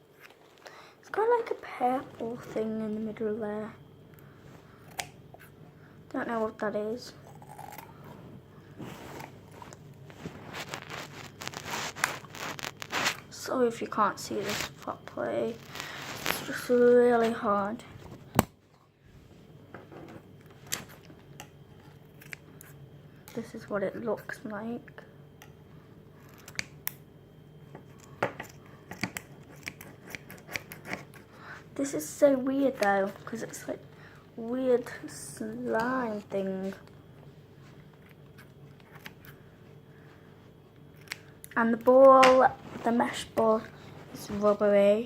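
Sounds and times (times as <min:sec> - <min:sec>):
squishy ball crackling: 0:08.8 - 0:13.4, 0:14.2 - 0:16.7
scissors snipping: 0:28.9 - 0:31.2.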